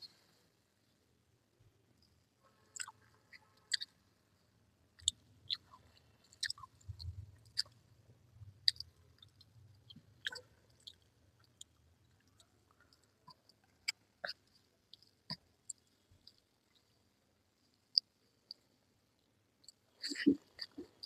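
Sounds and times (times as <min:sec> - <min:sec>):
faint low hum: 0:00.0 - 0:21.0
chewing with wet mouth smacks: 0:02.8 - 0:03.9, 0:05.0 - 0:07.8, 0:08.6 - 0:16.4.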